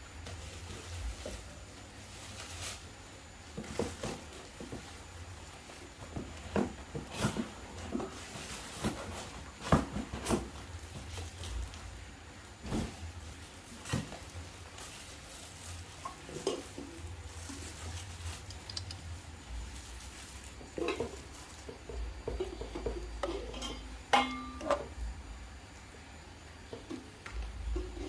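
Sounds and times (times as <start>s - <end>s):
kitchenware clinking and knocking: 20.7s - 25.0s.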